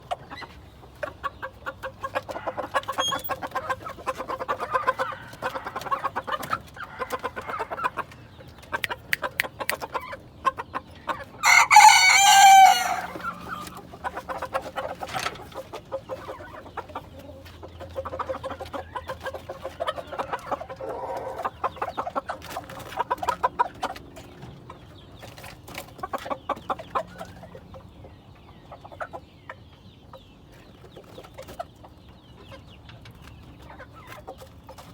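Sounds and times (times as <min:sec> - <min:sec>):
chickens clucking: 0:00.0 - 0:34.9
rooster crowing: 0:11.4 - 0:13.4.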